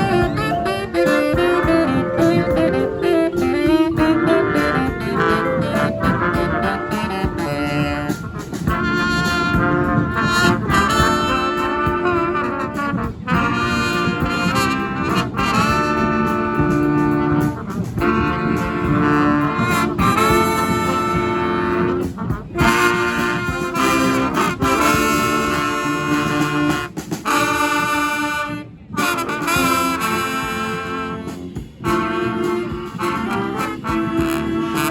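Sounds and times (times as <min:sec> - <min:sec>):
brass band playing: 0:00.0 - 0:34.9
percussion beat: 0:00.0 - 0:34.9.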